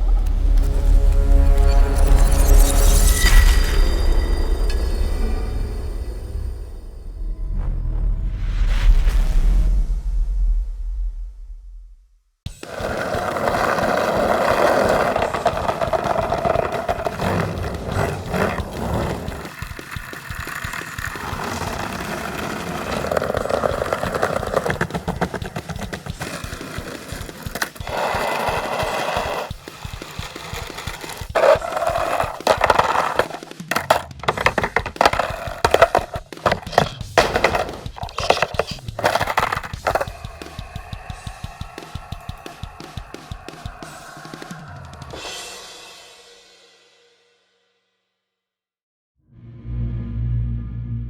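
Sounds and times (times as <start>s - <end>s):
skateboard clacks and scrapes: 12.5s - 40.3s
skateboard wheels rolling: 12.5s - 44.5s.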